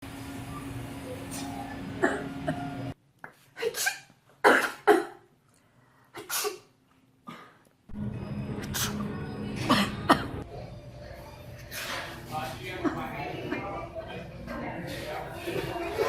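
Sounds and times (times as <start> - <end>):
steady background hum: 0.0 - 16.0
woman sneezing: 3.6 - 5.2, 6.2 - 6.7.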